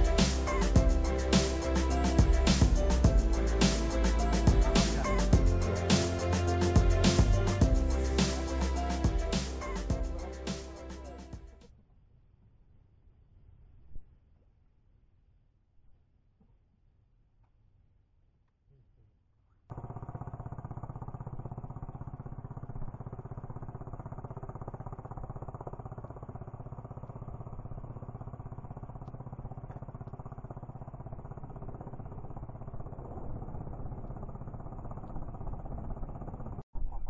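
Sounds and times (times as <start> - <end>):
boat engine droning: 0.0 - 11.6.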